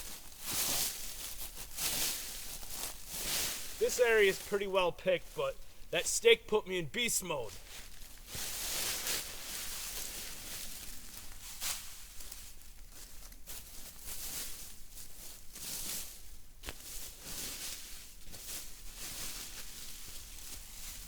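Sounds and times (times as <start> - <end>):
dry leaves rustling and crackling: 11.5 - 21.0.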